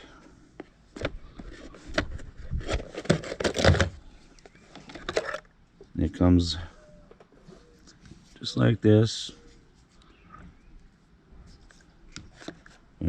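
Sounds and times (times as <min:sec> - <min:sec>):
clicks and knocks of handling: 0:00.6 - 0:05.9
packaging rustling: 0:01.0 - 0:05.4.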